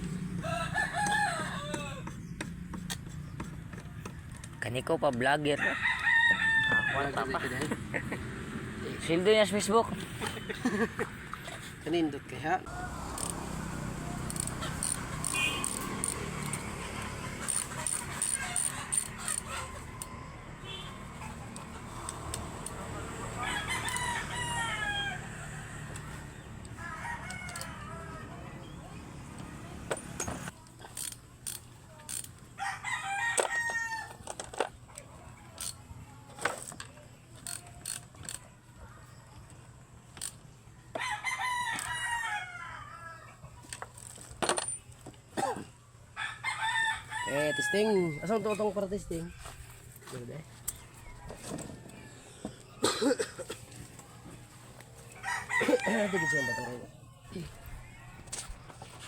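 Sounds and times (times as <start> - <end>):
rooster crowing: 0.3 - 2.2, 5.5 - 7.8, 12.7 - 16.1, 17.5 - 21.4, 22.9 - 28.8, 32.6 - 34.2, 40.9 - 43.4, 46.1 - 49.6, 50.7 - 52.6, 55.1 - 58.6.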